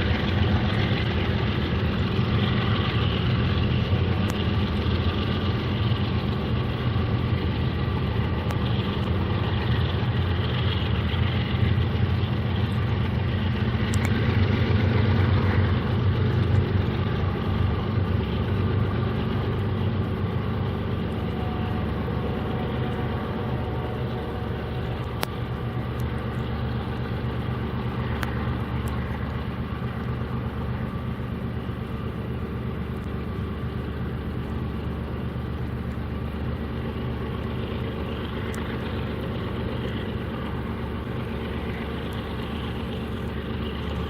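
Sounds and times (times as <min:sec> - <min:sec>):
diesel locomotive engines running: 0:00.0 - 0:44.0
faint clicks: 0:13.9 - 0:14.2.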